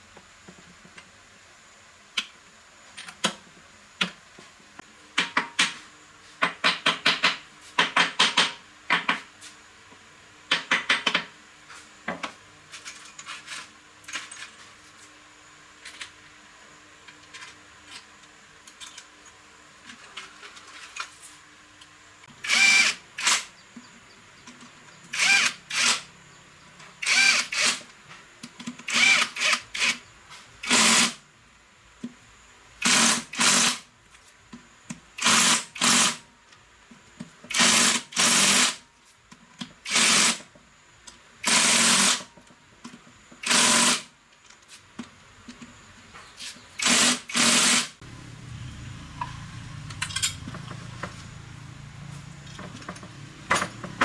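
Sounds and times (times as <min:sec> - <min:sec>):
power tool motor bursts: 0:22.3 - 0:23.5, 0:25.1 - 0:26.1, 0:27.0 - 0:27.9, 0:28.9 - 0:30.0, 0:30.6 - 0:31.2, 0:32.8 - 0:33.9, 0:35.2 - 0:36.2, 0:37.5 - 0:38.8, 0:39.8 - 0:40.4, 0:41.4 - 0:42.3, 0:43.4 - 0:44.1, 0:46.8 - 0:48.0.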